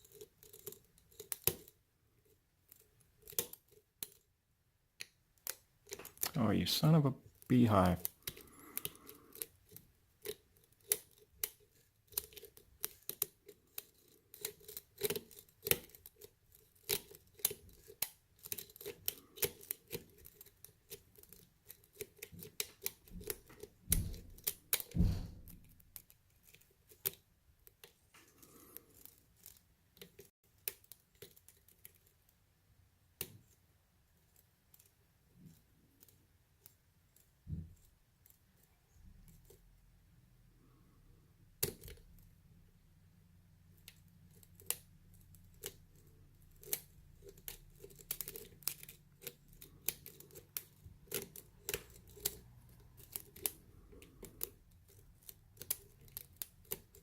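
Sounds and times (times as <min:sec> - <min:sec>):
lock pick clicking in a lock: 0:41.6 - 0:42.0, 0:46.6 - 0:57.0.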